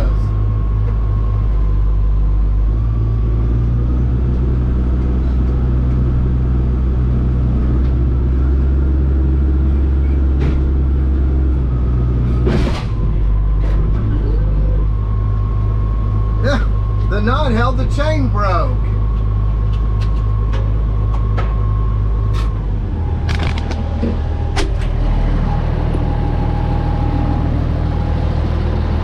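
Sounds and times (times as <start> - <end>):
diesel engine under load: 0.0 - 29.0.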